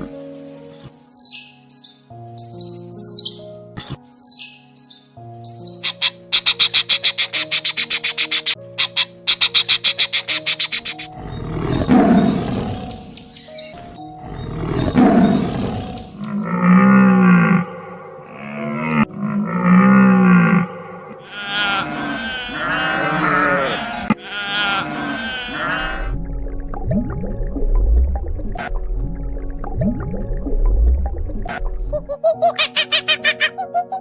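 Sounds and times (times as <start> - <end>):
animal roaring calls: 14.4 - 26.2
long low animal calls: 16.4 - 26.1
wavering bleating calls: 21.2 - 26.1.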